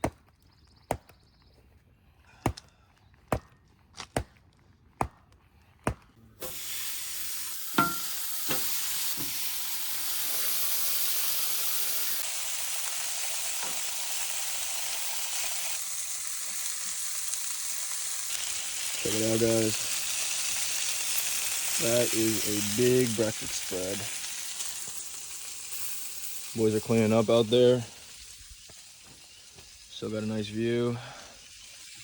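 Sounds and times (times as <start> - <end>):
food sizzling in hot pan: 6.4 - 32.0
metal clank: 7.8 - 9.3.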